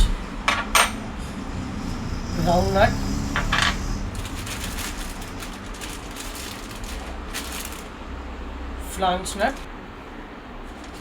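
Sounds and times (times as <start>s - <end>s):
low steady hum: 0.0s - 11.0s
packaging rustling and handling: 3.7s - 8.0s, 10.7s - 11.0s.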